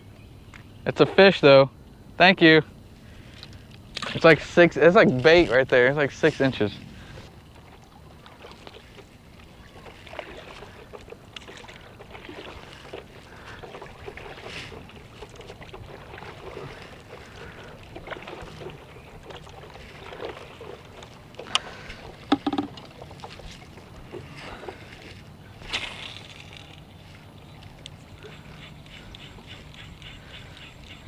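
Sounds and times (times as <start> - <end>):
water splashing around paddle board: 3.1 - 31.0
knocks on board: 22.3 - 22.7.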